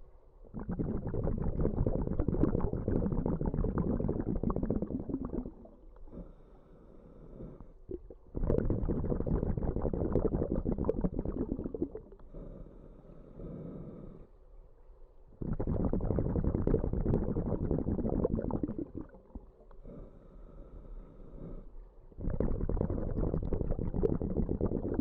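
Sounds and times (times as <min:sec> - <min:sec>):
underwater regulator breathing bubbles: 0:00.5 - 0:06.3, 0:07.9 - 0:12.3, 0:15.4 - 0:20.0, 0:22.2 - 0:25.0.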